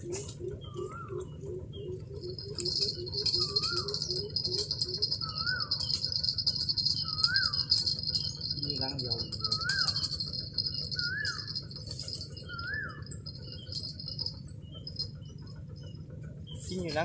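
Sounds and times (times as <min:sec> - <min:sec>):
bird whistled call: 0:00.0 - 0:06.0, 0:06.9 - 0:07.9, 0:09.4 - 0:10.2, 0:10.8 - 0:14.9
bird hooting: 0:00.0 - 0:17.0.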